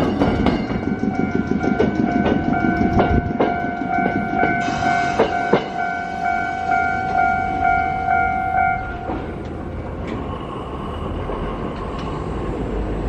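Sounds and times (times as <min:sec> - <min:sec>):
rail wheels knocking: 0:00.0 - 0:10.4
level crossing bell ringing: 0:00.8 - 0:09.2.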